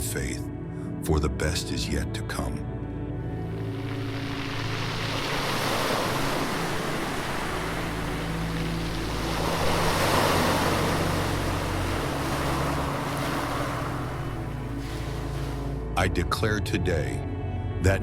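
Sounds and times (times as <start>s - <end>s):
low sustained drone notes: 2.7s - 16.1s
waves breaking: 3.4s - 16.0s.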